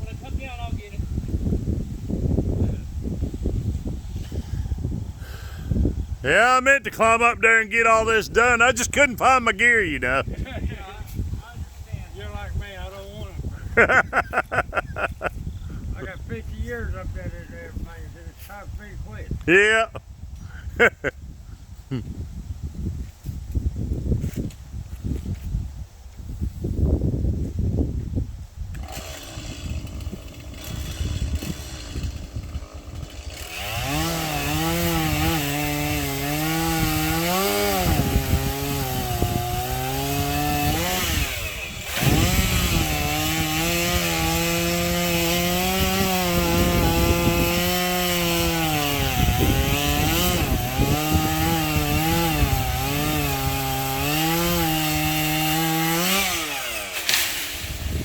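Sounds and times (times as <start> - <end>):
chainsaw cutting branches: 28.7 - 58.0.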